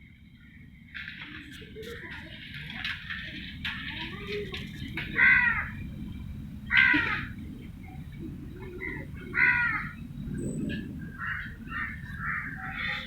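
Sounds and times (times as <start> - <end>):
steady low rumble: 3.4 - 13.0
harsh animal calls: 6.7 - 7.4, 8.7 - 10.0, 11.0 - 13.0.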